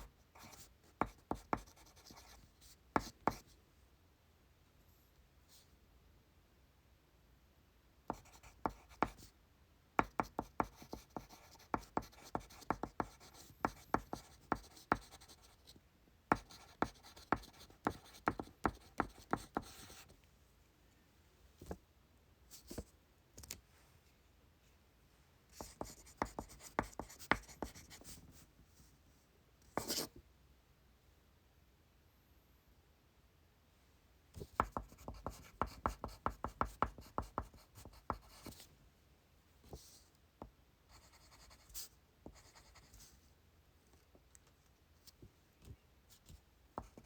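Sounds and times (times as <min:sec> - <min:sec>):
pencil writing on paper: 0:00.0 - 0:02.4, 0:08.1 - 0:09.3, 0:10.0 - 0:15.7, 0:16.3 - 0:20.1, 0:25.6 - 0:28.2, 0:29.8 - 0:30.1, 0:34.5 - 0:38.6, 0:40.9 - 0:43.0.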